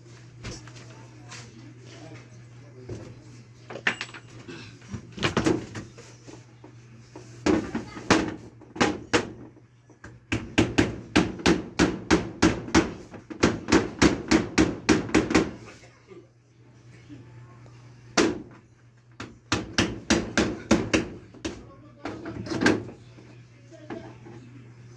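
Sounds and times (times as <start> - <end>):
hammer striking nails: 10.3 - 15.6, 19.2 - 21.6.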